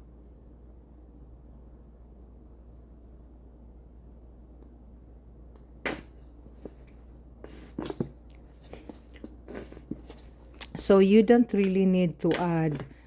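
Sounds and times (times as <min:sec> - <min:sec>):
kitchen utensils clicking and scraping: 0:11.6 - 0:13.0.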